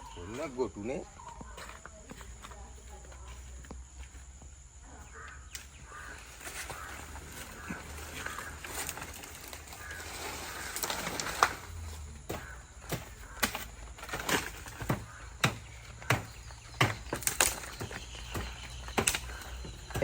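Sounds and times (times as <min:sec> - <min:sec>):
sharp chopping blows: 0:12.3 - 0:20.0.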